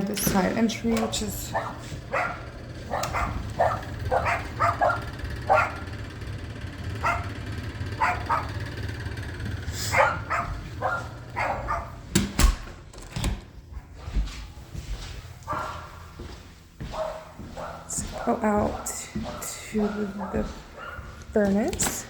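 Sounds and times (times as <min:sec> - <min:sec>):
dog barking: 0:01.5 - 0:05.9, 0:07.0 - 0:07.4, 0:08.0 - 0:08.6, 0:09.9 - 0:12.0, 0:15.5 - 0:16.0, 0:16.9 - 0:21.2.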